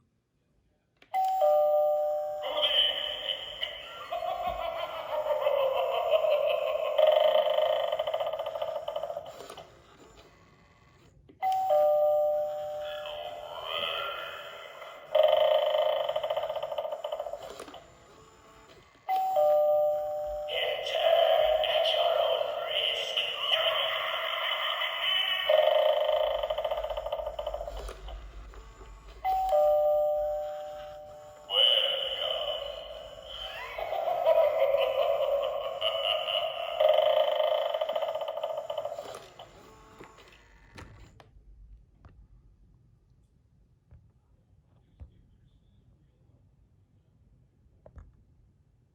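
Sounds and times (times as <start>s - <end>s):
wavering electronic spooky sound: 1.4s - 9.3s, 11.7s - 17.8s, 19.1s - 39.5s
eerie sliding tone: 19.8s - 39.6s
rapidly pulsing electronic sound: 20.6s - 29.3s.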